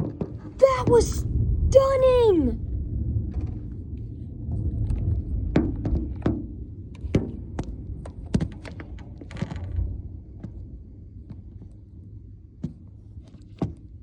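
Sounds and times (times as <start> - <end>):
thunder rumbling: 0.5 - 8.0.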